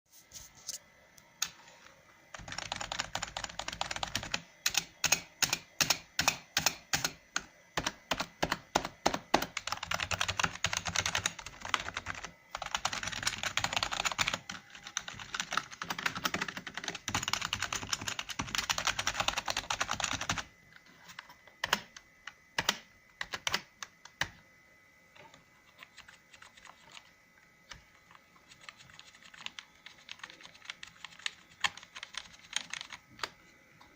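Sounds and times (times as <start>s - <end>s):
typing on a keyboard: 2.4s - 20.5s, 21.6s - 22.0s, 22.6s - 24.3s, 25.6s - 27.1s, 28.4s - 33.3s.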